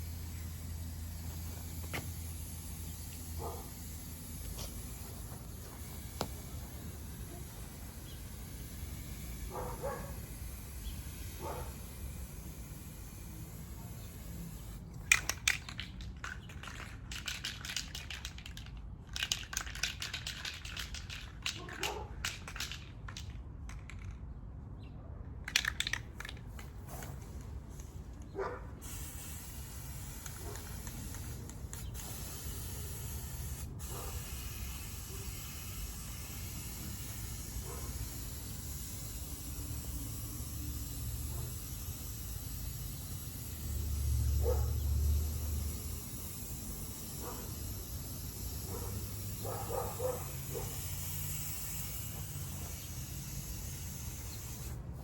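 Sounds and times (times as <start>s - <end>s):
spray paint can spraying: 0.0s - 24.3s, 25.4s - 28.1s, 28.7s - 55.0s.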